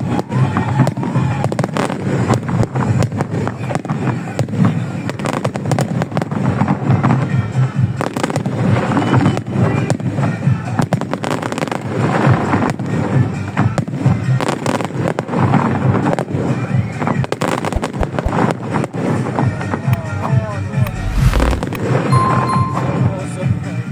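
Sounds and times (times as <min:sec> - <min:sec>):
music playing: 0:20.7 - 0:23.4.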